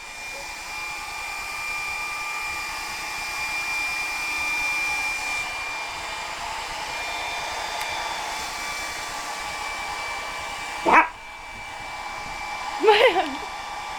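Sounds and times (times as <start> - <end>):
hair dryer blowing with whine: 0.0 - 13.9
dog barking: 10.8 - 11.2
dog yelp: 10.8 - 11.2.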